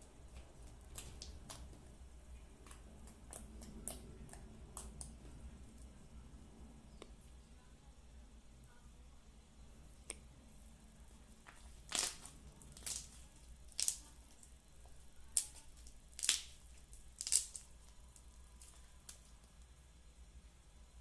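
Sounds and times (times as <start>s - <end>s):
slime squishing: 0.3s - 5.9s, 11.3s - 19.7s.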